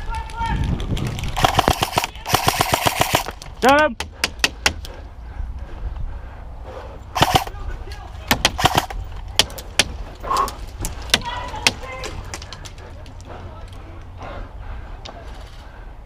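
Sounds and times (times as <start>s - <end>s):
airsoft guns firing: 1.3s - 3.4s, 7.2s - 7.6s, 8.3s - 10.0s.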